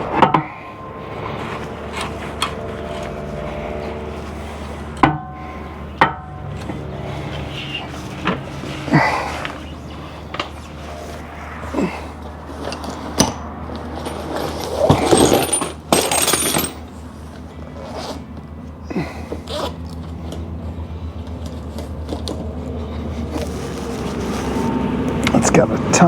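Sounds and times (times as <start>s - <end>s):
steady low hum: 0.0s - 26.0s
metal tools clinking and scraping: 12.6s - 18.1s.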